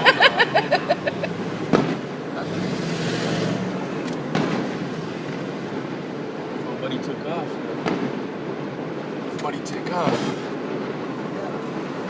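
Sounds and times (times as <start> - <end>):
distant fireworks bursting: 1.6 - 2.3, 4.2 - 6.6, 7.6 - 9.2.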